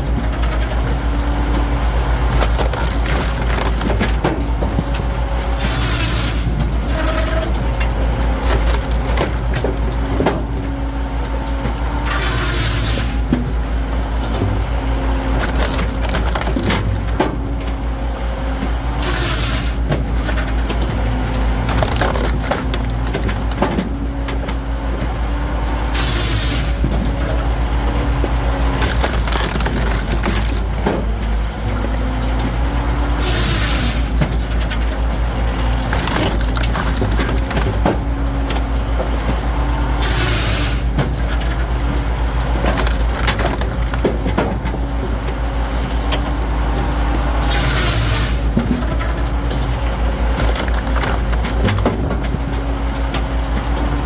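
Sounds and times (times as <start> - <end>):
engine running: 0.0 - 54.0
logs cracking and splintering: 0.0 - 54.0.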